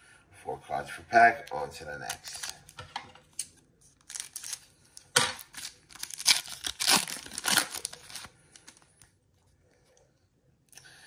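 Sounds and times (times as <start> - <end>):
wrapper tearing and crinkling: 2.0 - 8.8.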